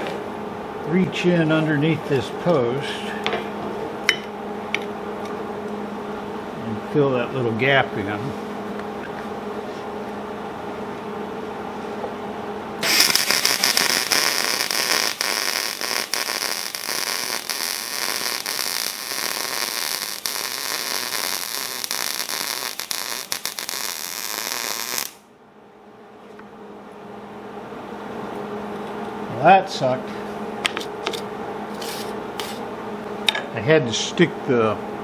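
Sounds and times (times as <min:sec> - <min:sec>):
welding arc crackling and hissing: 0:12.8 - 0:25.2, 0:31.7 - 0:32.6.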